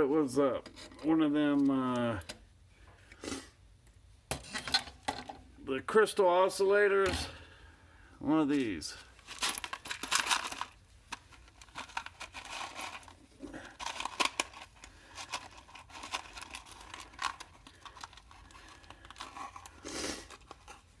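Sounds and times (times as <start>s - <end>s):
hands handling circuit board: 9.3s - 21.0s.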